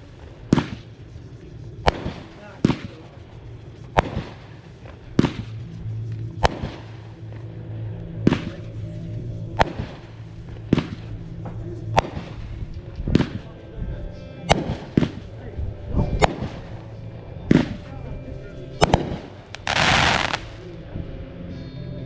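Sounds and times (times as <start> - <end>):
fireworks bangs: 0.0 - 5.7, 6.4 - 7.4, 9.6 - 11.2, 18.8 - 20.7.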